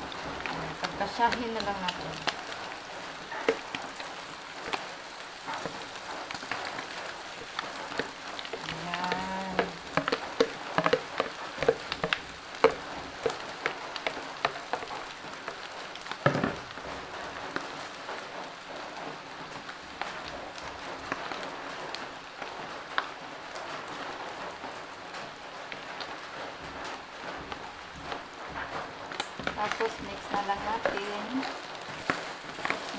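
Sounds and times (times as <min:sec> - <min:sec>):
spatula scraping a pan: 0:00.0 - 0:17.0, 0:28.5 - 0:32.9
rice and vegetables sizzling: 0:00.0 - 0:32.9.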